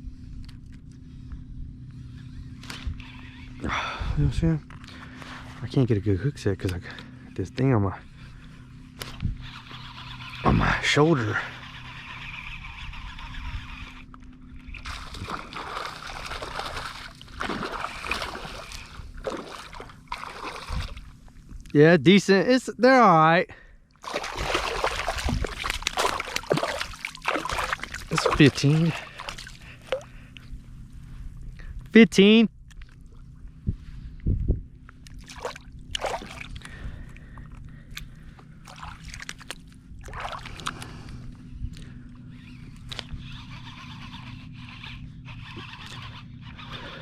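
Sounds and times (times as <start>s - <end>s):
steady low hum: 0.0s - 47.0s
water splashing and sloshing: 13.9s - 21.7s, 23.9s - 31.5s, 32.7s - 33.8s, 34.9s - 41.9s.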